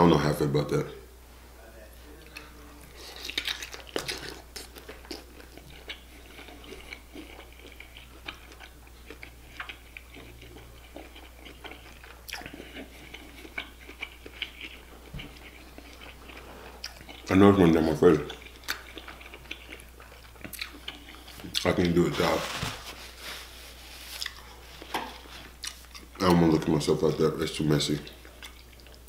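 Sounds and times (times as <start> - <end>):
wet chewing and biting: 2.9 - 17.3, 18.2 - 22.0.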